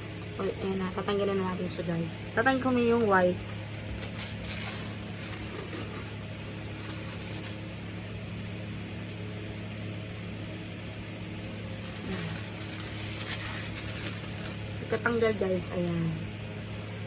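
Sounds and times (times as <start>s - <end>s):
steady low hum: 0.0s - 17.0s
wrapping rustling: 3.5s - 7.8s, 11.8s - 15.0s.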